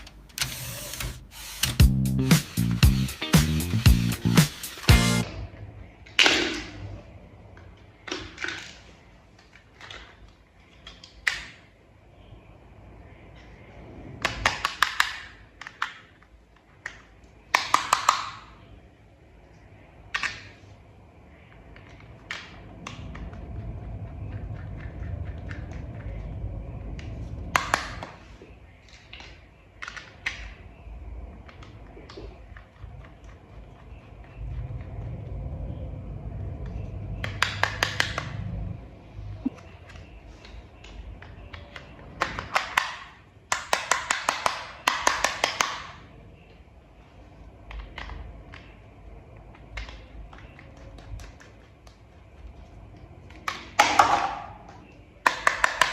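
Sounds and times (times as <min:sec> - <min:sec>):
plastic toy parts clicking: 0:40.8 - 0:46.0, 0:55.2 - 0:55.9.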